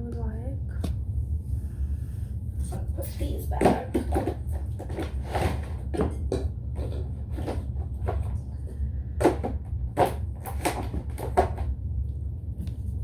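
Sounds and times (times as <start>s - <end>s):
steady low hum: 0.0s - 13.0s
small containers knocking: 3.5s - 8.4s.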